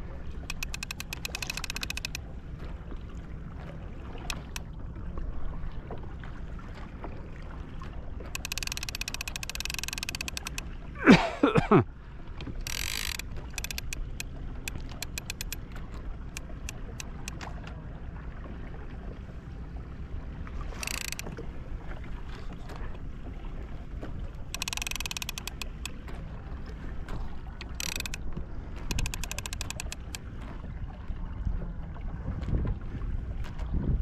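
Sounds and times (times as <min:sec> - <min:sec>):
fishing reel ratchet clicking: 0:00.5 - 0:02.2, 0:04.3 - 0:04.6, 0:08.4 - 0:10.6, 0:12.5 - 0:15.6, 0:20.8 - 0:21.3, 0:24.6 - 0:25.9, 0:27.6 - 0:28.2, 0:28.9 - 0:30.2.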